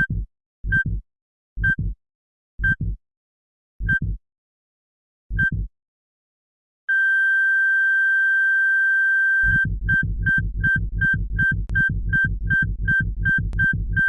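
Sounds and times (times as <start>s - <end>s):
steady low beat: 0.0s - 1.0s, 3.9s - 4.2s, 9.5s - 14.0s.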